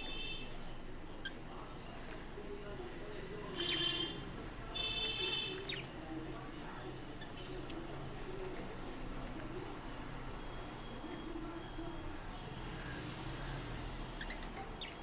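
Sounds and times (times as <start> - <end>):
budgie chirping calls: 5.6 - 5.9, 14.2 - 15.0.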